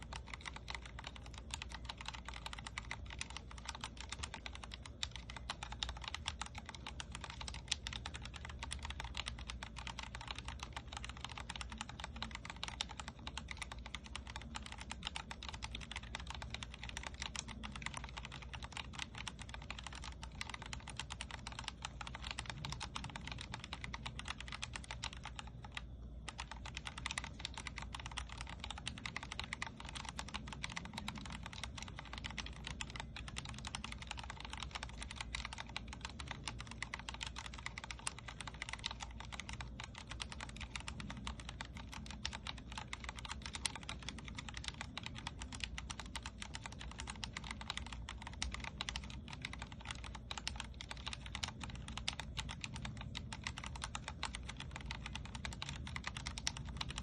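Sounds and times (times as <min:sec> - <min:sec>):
fast typing on keyboard: 0:00.0 - 0:57.0.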